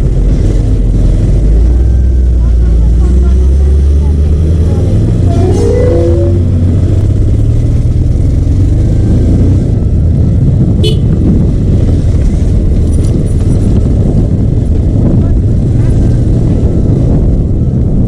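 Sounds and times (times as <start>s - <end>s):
motorcycle engine running: 0.0s - 18.0s
road rumble: 0.0s - 18.0s
wind on microphone: 0.0s - 18.0s.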